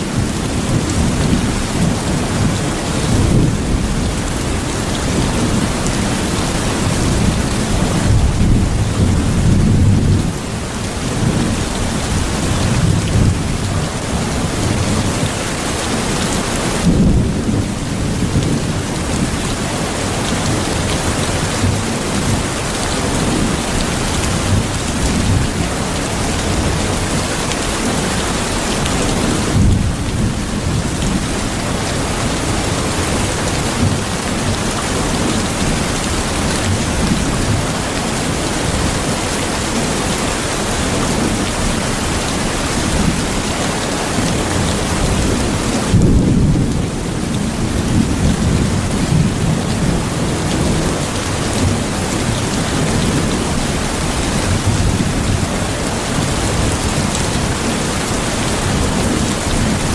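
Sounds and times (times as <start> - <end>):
heavy rain: 0.0 - 59.9
rolling thunder: 44.3 - 58.0.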